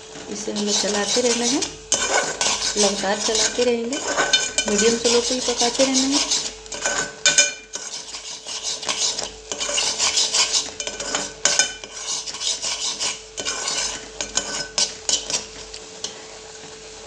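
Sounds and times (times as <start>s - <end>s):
utensil scraping pot: 0.0s - 16.2s
paste frying in ghee: 0.0s - 17.0s
utensil clinking against pot: 0.6s - 15.8s.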